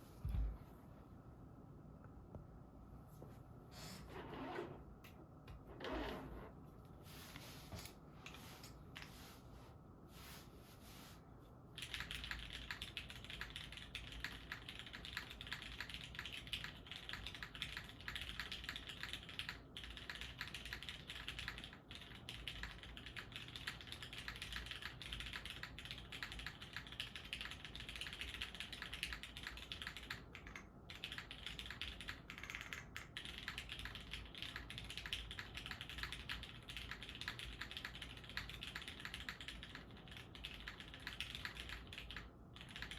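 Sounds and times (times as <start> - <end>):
typing on mechanical keyboard: 11.8 - 42.9.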